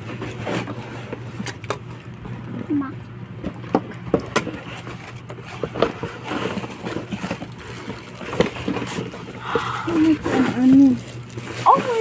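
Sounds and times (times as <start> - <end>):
knocks scrapes and rustles: 0.0 - 1.6, 4.2 - 9.4
steady low hum: 0.0 - 12.0.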